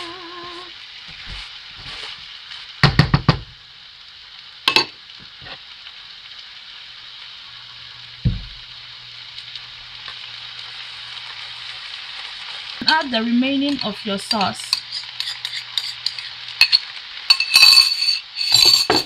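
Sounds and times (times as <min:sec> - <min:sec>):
food sizzling in a frying pan: 0:00.0 - 0:19.0
utensil knocking and scraping pan: 0:13.7 - 0:19.0.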